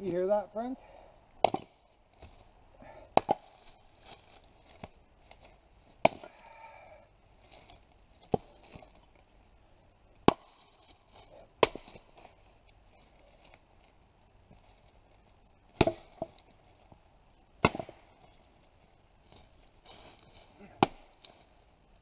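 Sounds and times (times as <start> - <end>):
axe chopping firewood: 1.4 - 3.6, 5.9 - 6.3, 10.2 - 10.7, 11.6 - 12.1, 15.7 - 16.4, 17.6 - 18.1, 20.6 - 21.4.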